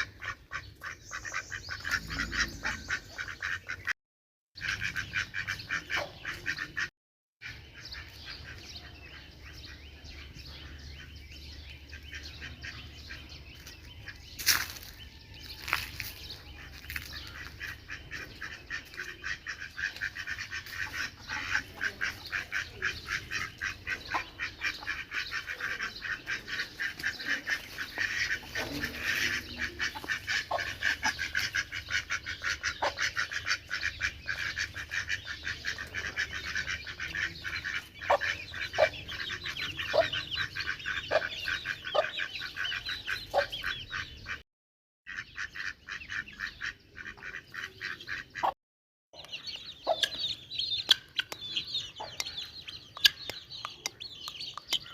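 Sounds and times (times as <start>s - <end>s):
ducks quacking: 0.0s - 4.0s, 4.6s - 44.4s, 45.1s - 48.6s, 49.2s - 54.9s.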